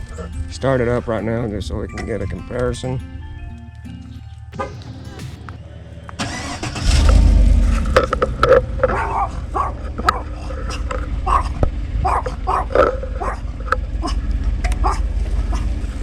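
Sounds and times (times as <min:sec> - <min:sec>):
truck engine cranking and idling: 0:00.0 - 0:16.0
dog barking: 0:04.6 - 0:05.1, 0:08.8 - 0:15.8.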